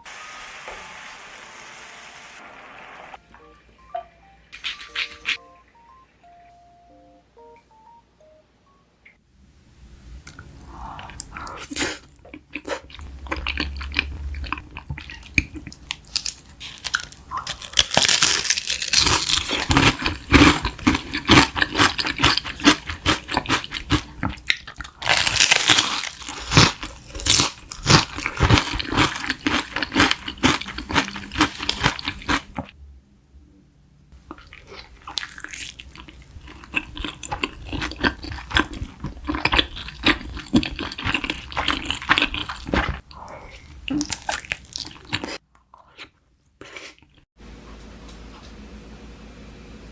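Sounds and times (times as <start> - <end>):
person chewing crunchy food: 10.9 - 32.7, 34.2 - 47.3.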